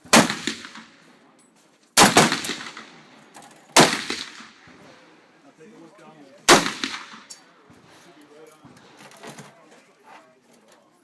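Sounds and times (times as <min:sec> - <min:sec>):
gunshots with echo: 0:00.0 - 0:01.0, 0:02.0 - 0:03.1, 0:03.8 - 0:04.7, 0:06.5 - 0:07.3.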